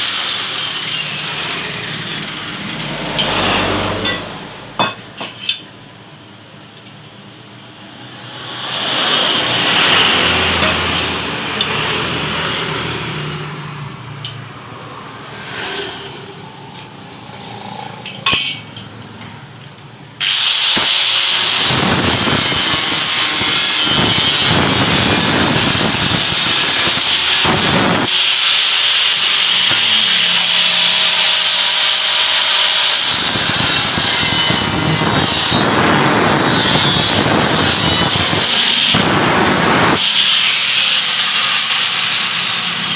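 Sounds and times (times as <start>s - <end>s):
power tool working metal: 0.0s - 5.6s, 8.2s - 13.4s, 20.2s - 42.9s.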